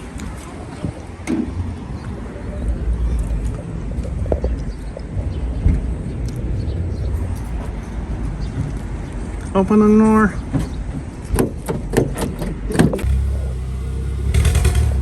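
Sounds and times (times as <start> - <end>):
car engine and road rumble: 10.4 - 15.0.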